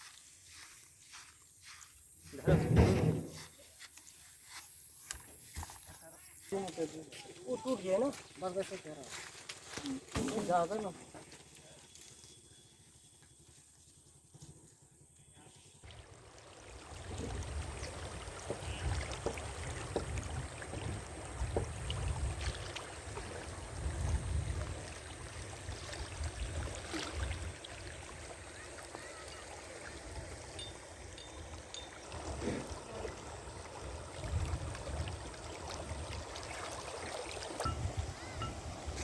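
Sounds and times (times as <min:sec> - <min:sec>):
floodwater rushing: 0:15.8 - 0:39.0.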